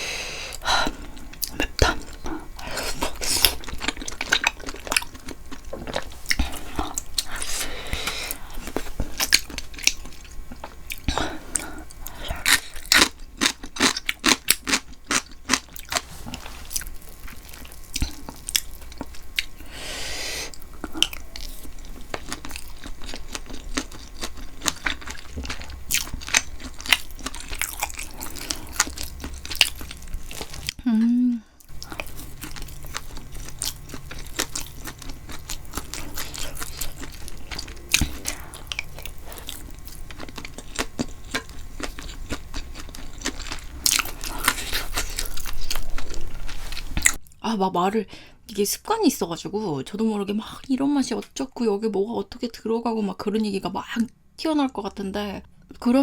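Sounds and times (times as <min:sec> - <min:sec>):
wet chewing and mouth smacks: 0:31.6 - 0:47.4.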